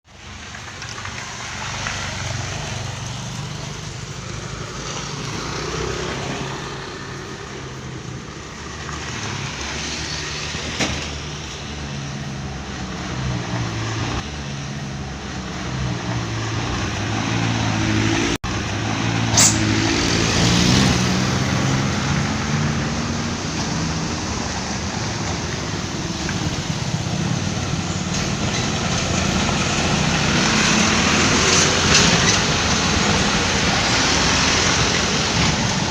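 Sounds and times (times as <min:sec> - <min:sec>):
bus engine humming: 0:00.1 - 0:35.9
sharp hiss: 0:19.4 - 0:19.7.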